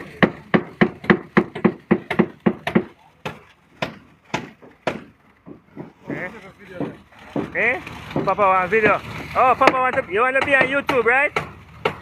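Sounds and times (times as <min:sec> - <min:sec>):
sharp knocks: 0:00.2 - 0:09.0, 0:09.6 - 0:12.0.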